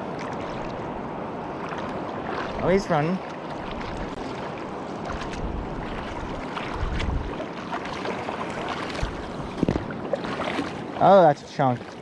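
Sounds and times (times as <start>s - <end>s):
wind buffeting microphone: 3.6s - 11.0s.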